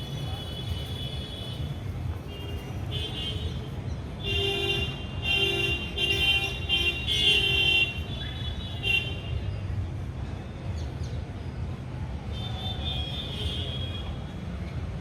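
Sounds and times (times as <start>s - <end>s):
street traffic rumble: 0.0s - 15.0s
vehicle horns honking: 2.3s - 3.6s, 4.2s - 9.4s, 12.4s - 14.2s.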